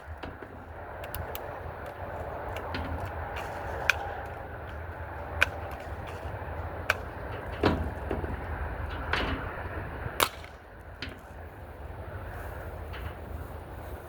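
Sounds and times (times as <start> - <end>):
bb gun clicks and clacks: 0.0 - 9.5, 10.2 - 11.3
bb gun firing crack: 10.2 - 10.6.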